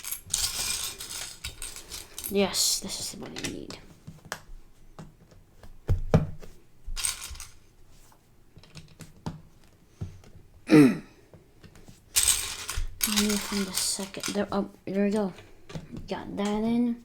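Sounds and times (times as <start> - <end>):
rattle of loose pieces: 0.0 - 3.8, 6.9 - 7.6, 12.1 - 14.5
lego bricks clicking and knocking: 0.0 - 6.1, 6.9 - 7.6, 8.6 - 10.4, 11.6 - 16.8.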